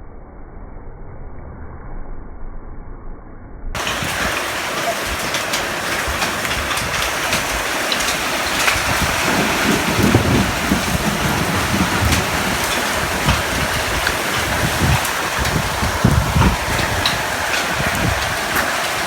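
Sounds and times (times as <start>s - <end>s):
hailstones ticking: 3.8s - 19.0s
heavy rain and hail: 3.8s - 19.0s.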